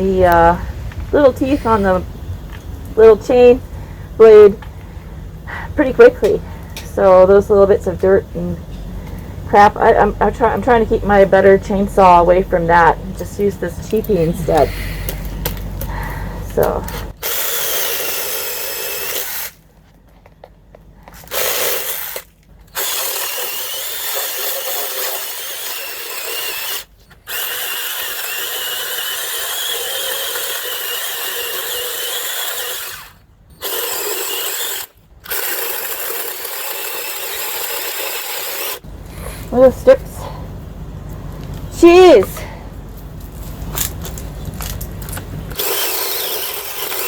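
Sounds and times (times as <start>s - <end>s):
mini chainsaw cutting with whine: 17.2s - 19.6s, 21.3s - 38.8s, 45.6s - 47.0s.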